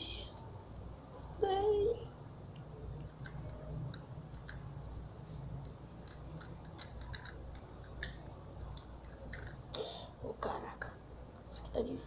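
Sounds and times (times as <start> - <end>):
plastic parts clicking and scraping: 5.6 - 9.6.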